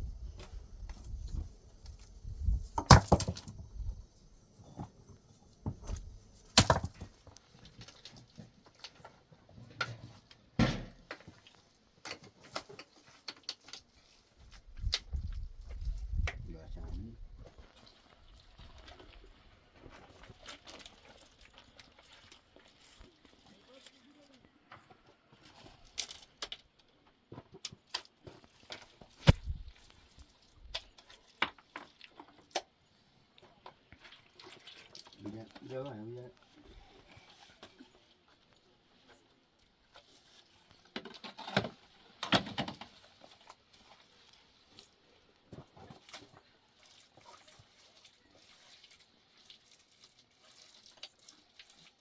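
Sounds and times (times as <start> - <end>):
hard objects knocking and clicking: 2.8 - 3.7, 6.6 - 7.2.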